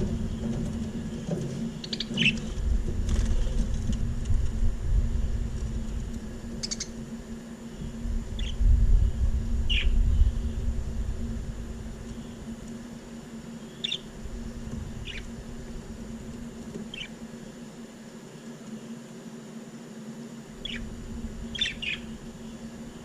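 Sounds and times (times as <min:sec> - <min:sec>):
steady low hum: 0:00.0 - 0:23.0
budgerigars chirping: 0:01.8 - 0:02.4, 0:06.6 - 0:07.0, 0:13.8 - 0:14.1, 0:15.0 - 0:15.3, 0:21.5 - 0:22.1.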